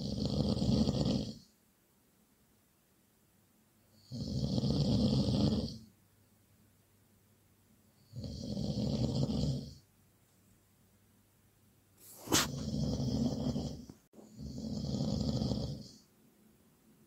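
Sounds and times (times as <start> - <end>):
person snoring: 0.0 - 1.4, 4.0 - 5.9, 8.0 - 9.8, 12.0 - 16.0.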